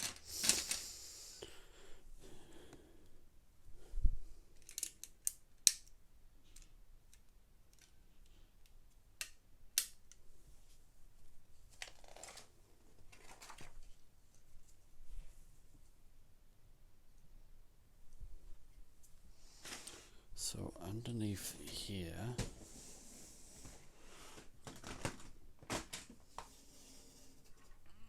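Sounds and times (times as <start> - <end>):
plastic bricks clicking together: 4.6 - 8.0.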